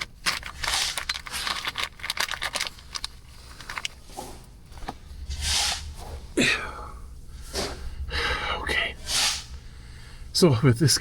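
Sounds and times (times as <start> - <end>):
light metal clicks and rattles: 0.0 - 4.0
short breathy hiss: 5.3 - 6.1, 9.0 - 9.6.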